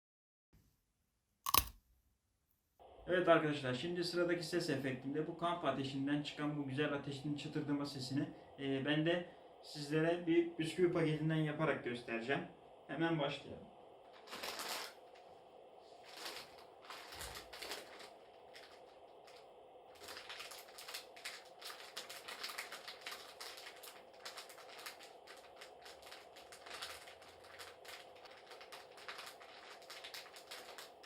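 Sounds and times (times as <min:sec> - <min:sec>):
plastic wrapper crinkling: 0:01.5 - 0:01.7, 0:14.2 - 0:15.0, 0:16.0 - 0:19.4, 0:20.0 - 0:31.0.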